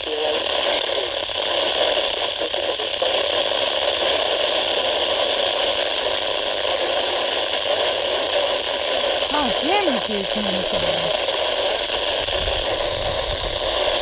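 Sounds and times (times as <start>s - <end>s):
radio static hiss: 0.0s - 12.2s.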